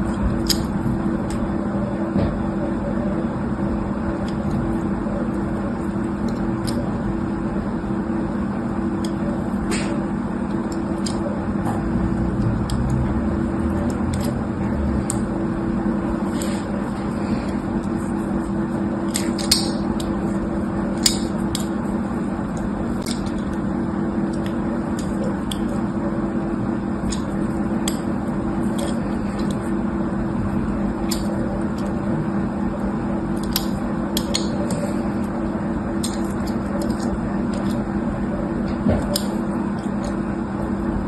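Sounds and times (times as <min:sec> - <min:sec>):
steady low hum: 0:00.0 - 0:41.0
sharp snips and clicks: 0:19.0 - 0:20.2, 0:27.0 - 0:28.1, 0:33.4 - 0:34.9.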